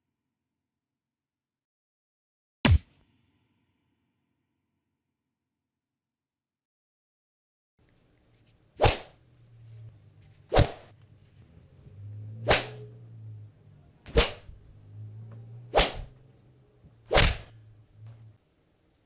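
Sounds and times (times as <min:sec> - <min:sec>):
faint low hum: 0:07.8 - 0:19.0.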